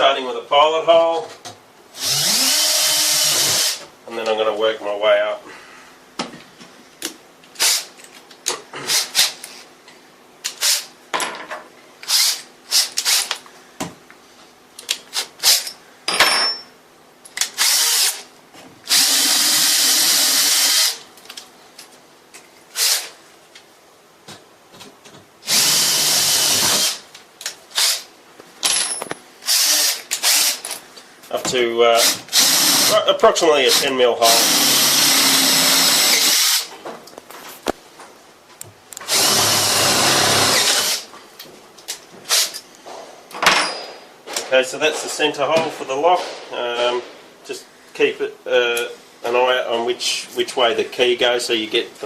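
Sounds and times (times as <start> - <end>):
power drill boring into wood: 2.0 - 3.8, 12.1 - 13.3, 17.6 - 18.2, 18.9 - 21.0, 25.4 - 27.0, 29.5 - 30.6, 32.0 - 33.0, 33.7 - 36.7, 39.1 - 41.1.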